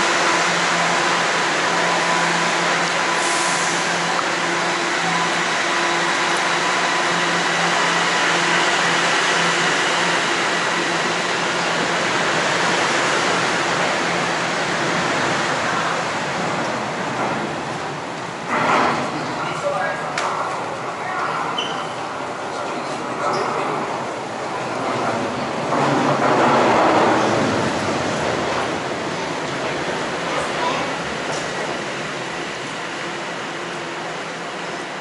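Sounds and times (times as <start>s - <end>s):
subway train running: 0.0s - 35.0s.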